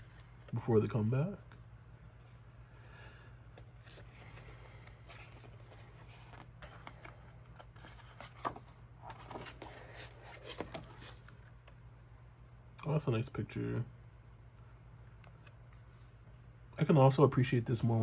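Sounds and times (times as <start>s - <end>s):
steady low hum: 0.0s - 18.0s
paper rustling: 3.8s - 11.4s
calendar pages turning: 3.8s - 11.5s.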